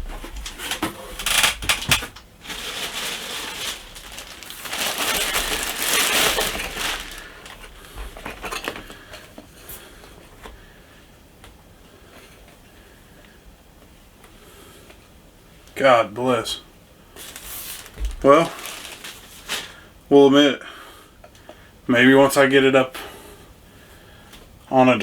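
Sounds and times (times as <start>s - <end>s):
packaging rustling and crinkling: 0.0s - 9.3s, 17.2s - 19.9s.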